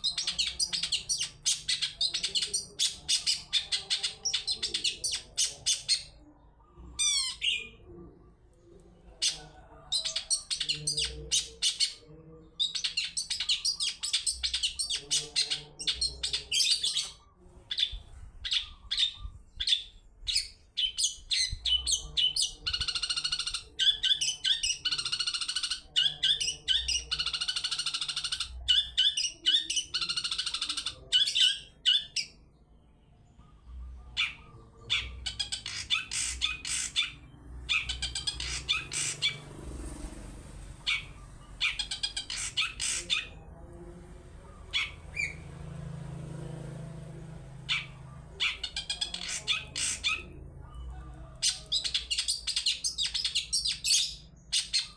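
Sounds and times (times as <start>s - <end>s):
shrike chattering calls: 40.8s - 43.5s.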